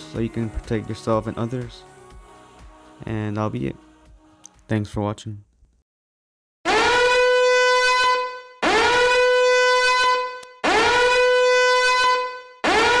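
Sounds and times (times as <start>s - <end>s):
horn-like alarm tone: 6.7s - 13.0s.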